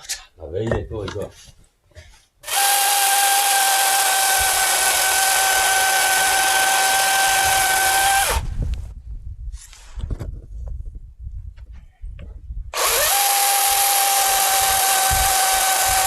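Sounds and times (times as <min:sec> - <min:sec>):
wood knocking and rustling: 0:00.0 - 0:02.2
electric chainsaw whining: 0:02.4 - 0:08.5, 0:12.8 - 0:16.0.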